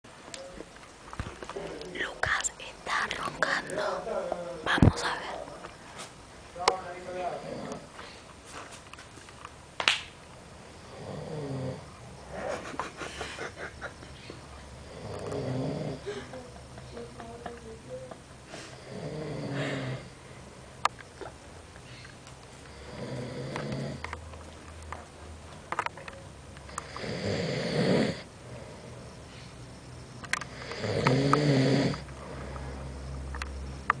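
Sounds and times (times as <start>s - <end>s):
person snoring: 14.8s - 16.3s, 18.6s - 20.1s, 22.7s - 24.0s, 26.8s - 28.8s, 30.4s - 32.5s.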